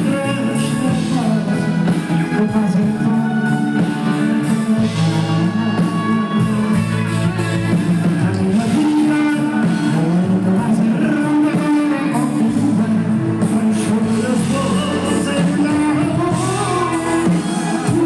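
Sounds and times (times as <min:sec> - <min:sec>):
live band with guitar: 0:00.0 - 0:18.0.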